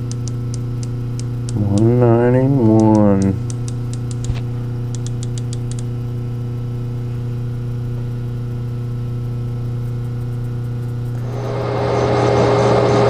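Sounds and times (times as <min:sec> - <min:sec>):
light ticks: 0:00.0 - 0:02.0, 0:02.8 - 0:05.9
metal lathe motor hum: 0:10.6 - 0:13.0.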